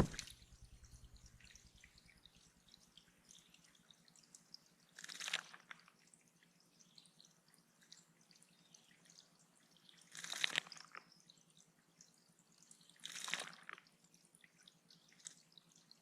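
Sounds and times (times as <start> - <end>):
bird splashing in water: 0.0 - 0.3
water dripping: 0.0 - 16.0.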